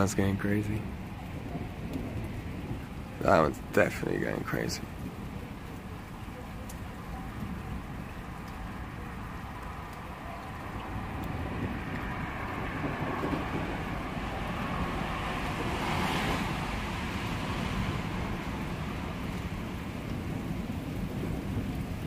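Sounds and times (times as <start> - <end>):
steady rain: 0.0 - 22.0
rushing noise: 10.6 - 20.0.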